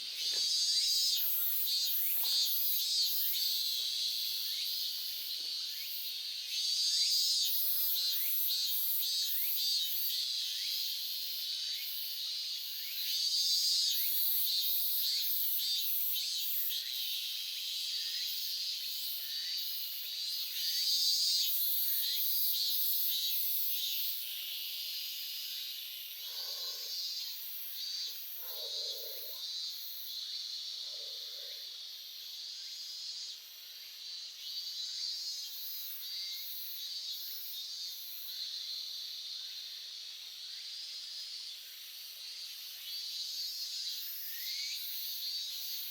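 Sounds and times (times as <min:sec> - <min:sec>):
insects chirping: 0:00.0 - 0:45.9.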